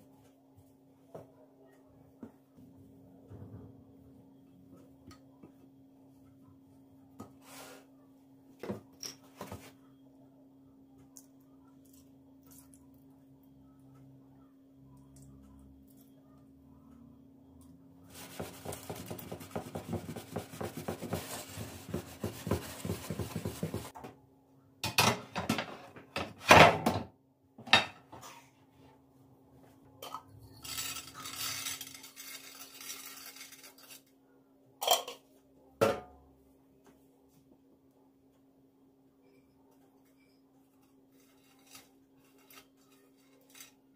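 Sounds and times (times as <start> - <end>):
utensil scraping dish: 18.1 - 23.9.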